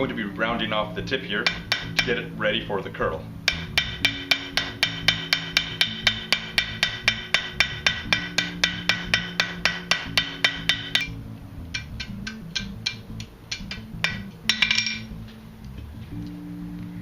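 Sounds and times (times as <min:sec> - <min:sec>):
background music: 0:00.0 - 0:17.0
hammer striking anvil: 0:01.4 - 0:02.2, 0:03.5 - 0:11.2, 0:11.8 - 0:15.1.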